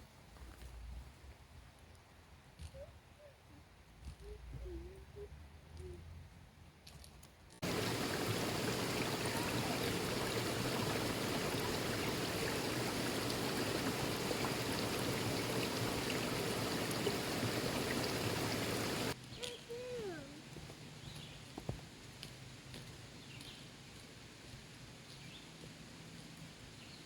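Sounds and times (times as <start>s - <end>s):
stream water rushing: 7.6s - 19.2s.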